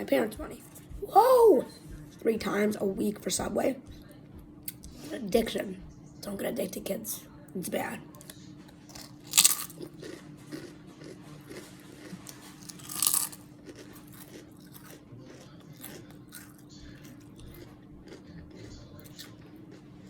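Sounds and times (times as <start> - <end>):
person chewing crunchy sandwich: 8.7 - 20.0.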